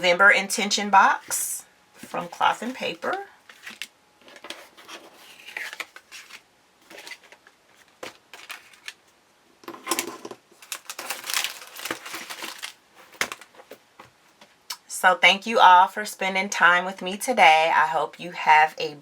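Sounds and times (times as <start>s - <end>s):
paper and packaging rustling: 2.0s - 9.2s, 9.8s - 13.8s.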